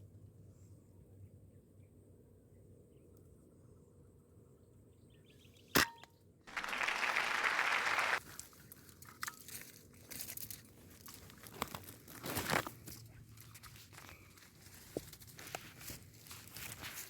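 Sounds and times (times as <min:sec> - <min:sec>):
rustling and crackling: 0:08.2 - 0:17.0.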